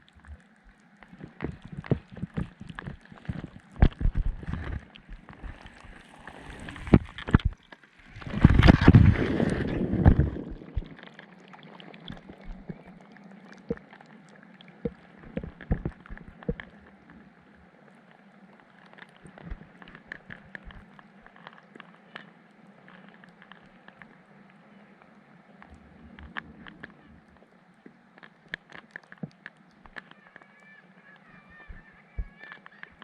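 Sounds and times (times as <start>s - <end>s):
water sloshing and splashing: 0.0s - 17.7s, 25.5s - 33.0s
rush of water: 0.0s - 33.0s.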